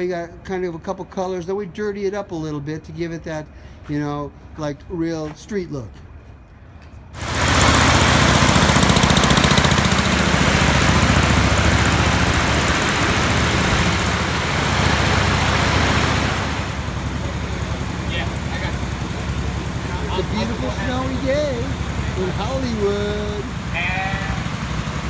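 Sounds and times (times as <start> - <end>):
engine running: 7.2 - 25.0
loud rushing hiss: 7.2 - 25.0.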